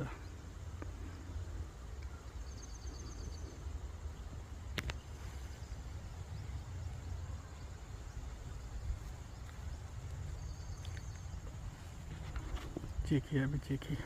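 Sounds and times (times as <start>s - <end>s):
bird twittering: 0.0s - 9.0s, 9.6s - 11.6s
steady low rumble: 0.0s - 14.0s.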